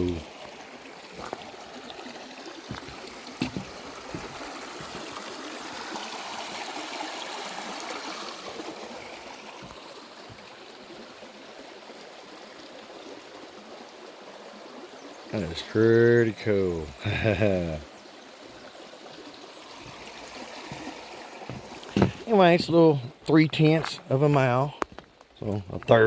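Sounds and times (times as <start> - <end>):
creek flowing over rocks: 0.0 - 26.0
soft knocks: 2.7 - 4.4, 20.7 - 22.8.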